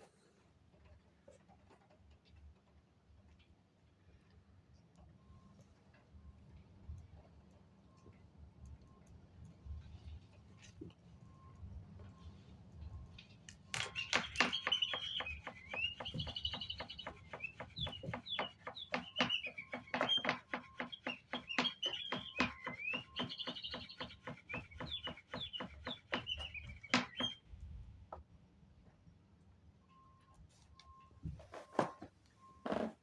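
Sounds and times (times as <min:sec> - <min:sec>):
electronic bird toy chirping: 0:13.8 - 0:27.4.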